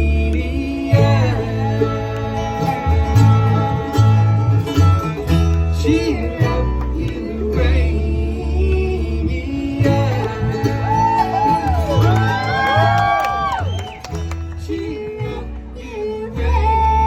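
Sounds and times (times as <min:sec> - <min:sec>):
bluegrass string band playing: 0:00.0 - 0:17.0.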